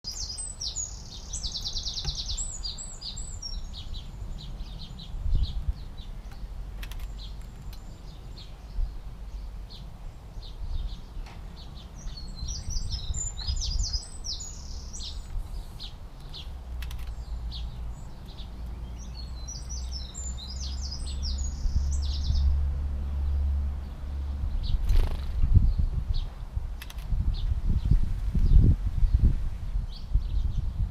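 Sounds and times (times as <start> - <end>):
bird chirps: 0.0 - 22.5
songbird warbling: 0.1 - 22.5.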